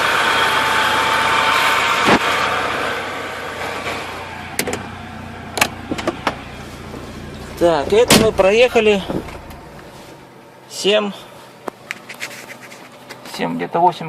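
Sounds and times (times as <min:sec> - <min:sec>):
car engine running: 0:00.0 - 0:10.7.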